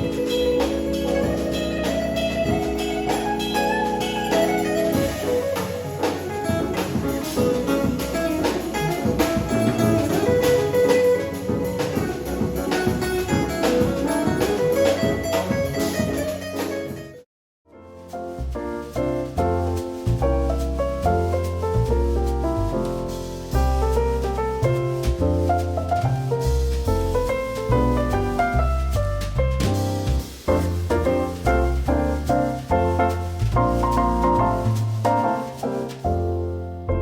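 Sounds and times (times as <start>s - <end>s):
jazz with guitar and drums: 0.0s - 37.0s.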